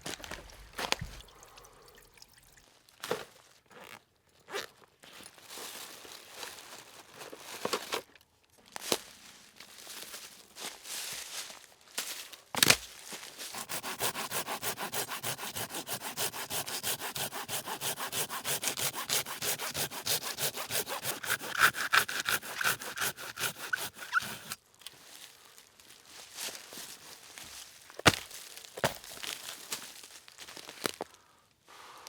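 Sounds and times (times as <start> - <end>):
hand saw cutting wood: 13.4 - 24.6.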